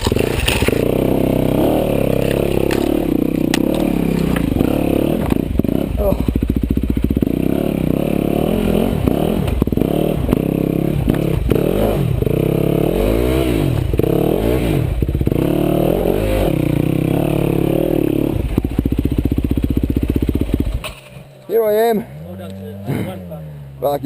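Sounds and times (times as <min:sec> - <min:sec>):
motorcycle engine revving: 0:00.0 - 0:24.0.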